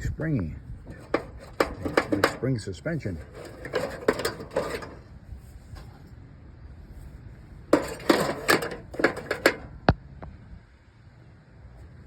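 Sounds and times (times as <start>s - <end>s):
metal stove clanking and rattling: 0.9s - 5.0s, 7.8s - 9.8s.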